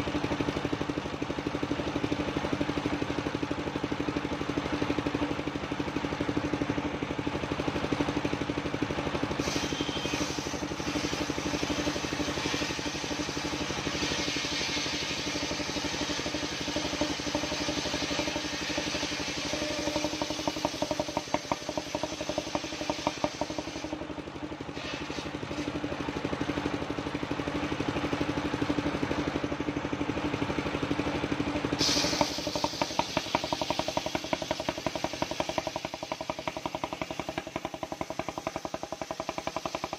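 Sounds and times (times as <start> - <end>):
sawmill engine running: 0.0 - 39.9
harsh saw hiss: 9.3 - 23.9, 31.8 - 39.9.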